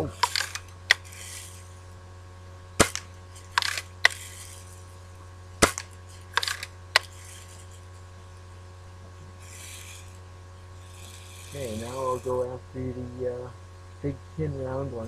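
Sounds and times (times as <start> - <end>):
bb gun firing: 2.8 - 4.6, 5.6 - 7.3.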